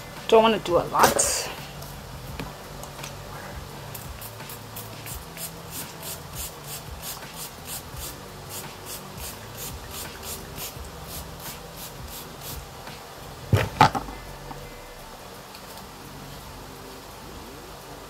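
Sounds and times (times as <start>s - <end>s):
hair being brushed: 3.1s - 13.3s
sharp knocks: 13.5s - 14.2s.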